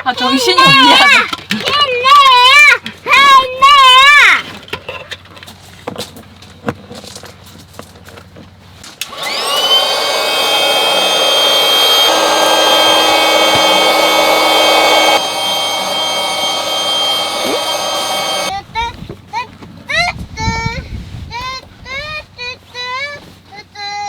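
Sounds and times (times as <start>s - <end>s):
small electric motor whining: 9.0s - 18.5s.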